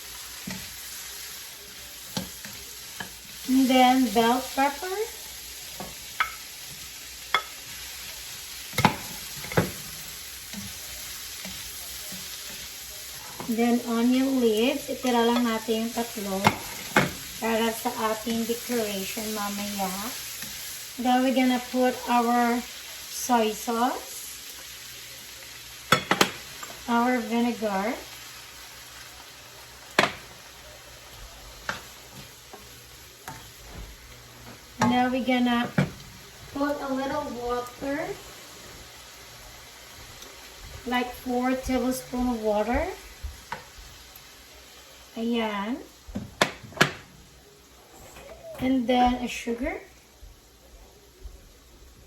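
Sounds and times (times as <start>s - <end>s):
vegetables sizzling in a pan: 0.0s - 52.0s.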